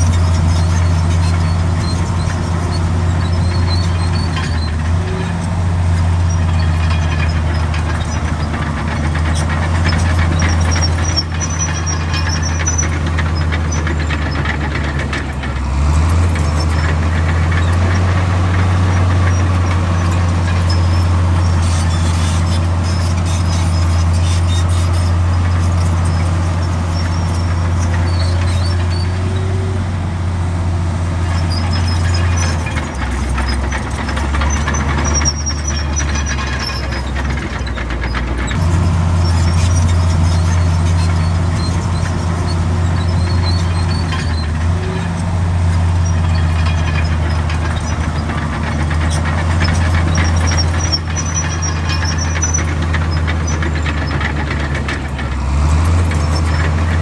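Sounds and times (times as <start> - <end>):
bulldozer diesel engine running hard: 0.0 - 57.0
high-pitched squeaks: 15.9 - 29.7, 31.2 - 54.9.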